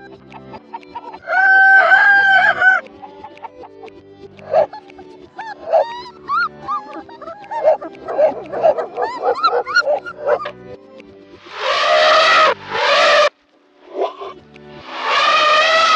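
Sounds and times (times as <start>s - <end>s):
background music: 0.0s - 15.9s
dog giving high calls: 4.5s - 4.8s, 5.4s - 10.5s.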